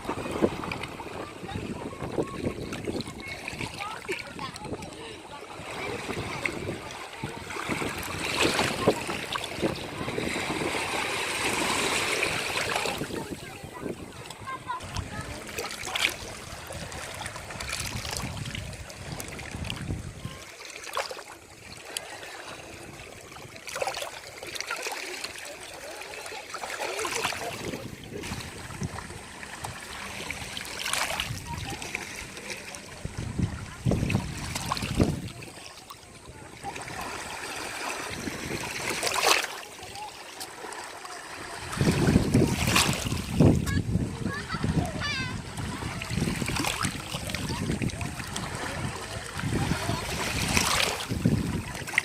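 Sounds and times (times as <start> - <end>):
ocean waves washing onto beach: 0.0 - 52.0.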